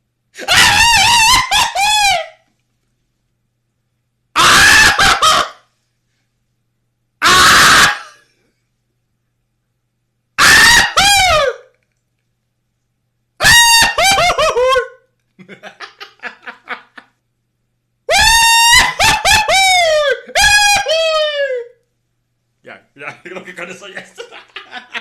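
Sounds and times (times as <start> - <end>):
person shrieking high-pitched: 0.4 - 2.4, 4.4 - 5.6, 7.2 - 8.2, 10.4 - 11.7, 13.4 - 14.8, 18.1 - 21.8
short rapid yelps: 0.4 - 2.4, 4.4 - 5.6, 7.2 - 8.1, 10.4 - 11.6, 13.4 - 14.9, 18.1 - 21.6.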